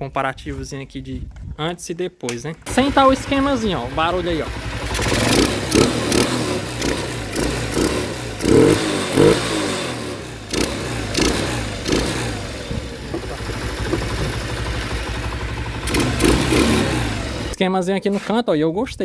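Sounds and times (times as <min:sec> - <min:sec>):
motorcycle engine revving and idling: 0:02.7 - 0:17.6.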